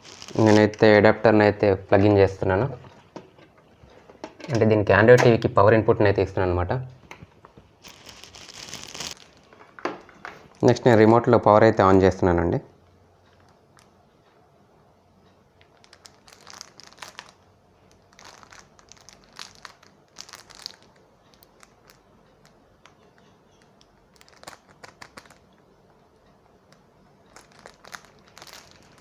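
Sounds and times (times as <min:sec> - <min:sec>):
plastic crinkling and clicking: 0:00.0 - 0:00.8, 0:07.1 - 0:11.1, 0:15.6 - 0:26.0, 0:26.7 - 0:29.0.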